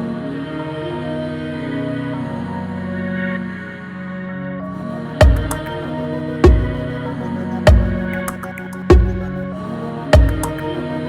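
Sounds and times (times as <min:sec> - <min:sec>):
ambient music with held chords: 0:00.0 - 0:11.0.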